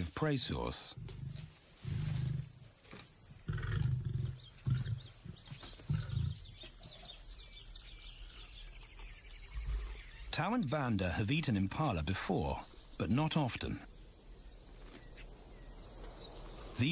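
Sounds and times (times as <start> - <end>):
animal grunting calls: 3.4 - 7.3.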